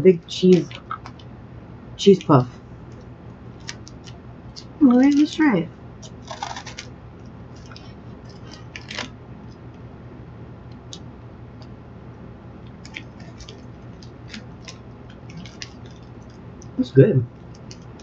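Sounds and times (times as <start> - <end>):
low steady hum: 0.0 - 18.0
crisp chewing crunches: 2.9 - 5.3, 6.0 - 6.9, 7.5 - 9.6, 12.7 - 16.8.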